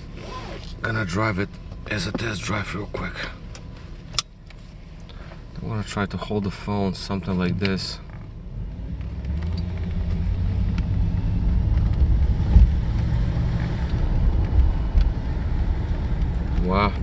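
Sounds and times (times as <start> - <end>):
road rumble: 0.0 - 17.0
car engine accelerating: 8.2 - 17.0.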